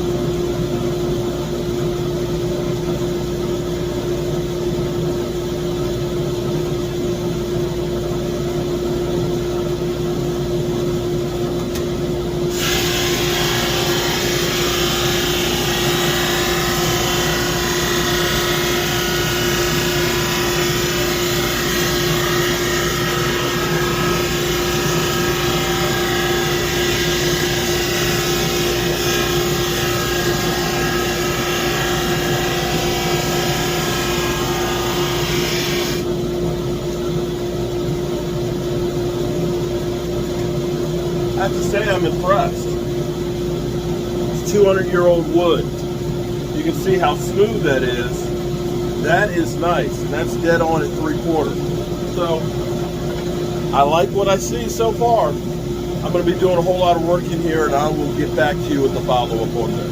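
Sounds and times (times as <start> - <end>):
drum sander humming: 0.0 - 59.9.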